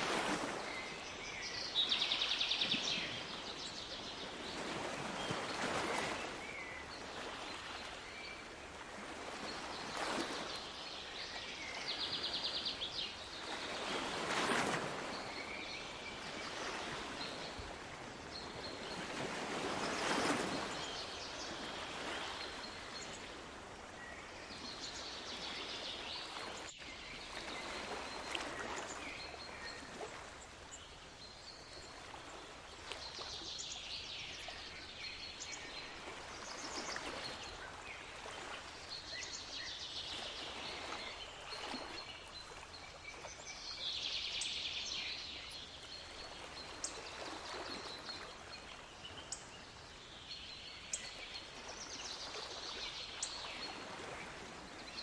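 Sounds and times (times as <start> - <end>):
sea waves washing: 0.0 - 8.1.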